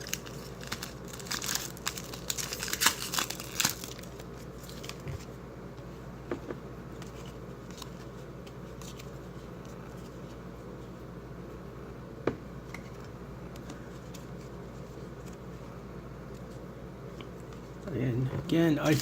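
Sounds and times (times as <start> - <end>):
wrapper crinkling and tearing: 0.0 - 5.0.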